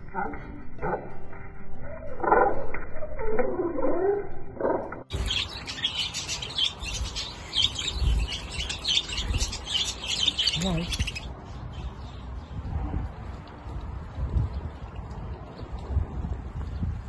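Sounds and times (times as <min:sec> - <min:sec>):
budgerigars chirping and chattering: 0:05.1 - 0:12.2.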